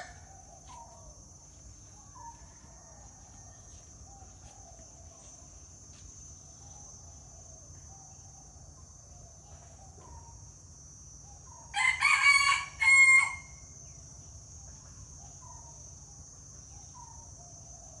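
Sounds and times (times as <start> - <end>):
rooster crowing: 0.0 - 0.2, 11.7 - 13.6.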